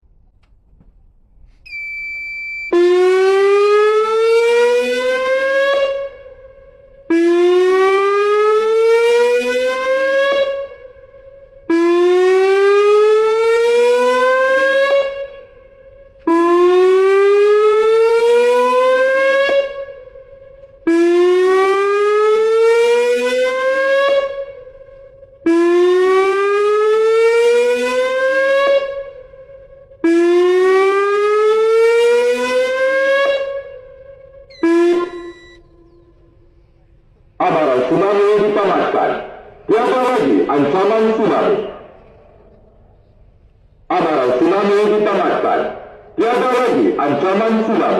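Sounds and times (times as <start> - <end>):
siren rising wail: 1.7 - 36.5
high alert tone: 34.5 - 36.2.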